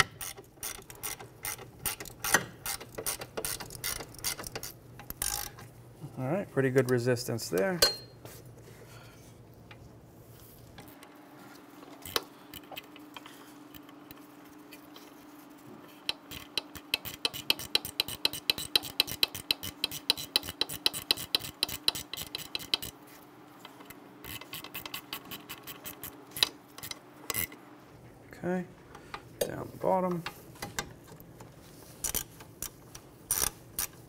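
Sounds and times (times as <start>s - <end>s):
hand ratchet clicking: 0.0s - 5.6s, 16.1s - 23.0s, 32.0s - 34.0s
faint steady hum: 0.0s - 34.0s.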